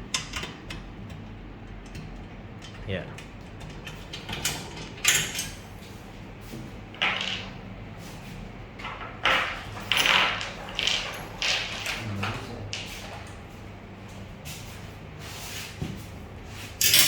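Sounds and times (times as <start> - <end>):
metal clinks and scrapes: 16.8 - 17.0.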